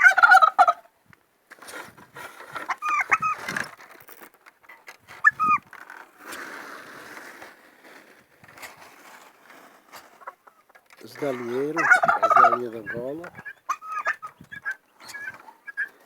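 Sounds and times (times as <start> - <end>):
poultry calling: 0.0 - 0.9, 2.5 - 3.8, 10.0 - 16.0
yard noises: 0.0 - 16.0.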